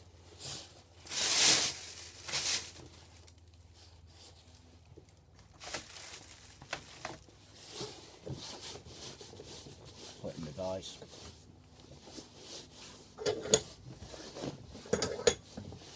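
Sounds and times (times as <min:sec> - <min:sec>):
rustling scrape of plug parts: 0:11.1 - 0:15.9.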